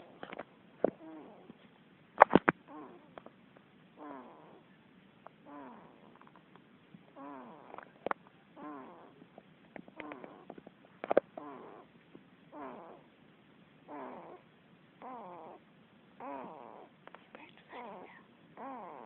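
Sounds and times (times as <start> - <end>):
pet snoring: 0.0 - 1.6, 2.7 - 3.2, 4.0 - 4.7, 5.4 - 6.2, 7.1 - 8.0, 8.6 - 9.3, 9.9 - 10.6, 11.3 - 11.9, 12.5 - 13.1, 13.9 - 15.6, 16.2 - 17.0, 17.8 - 19.0.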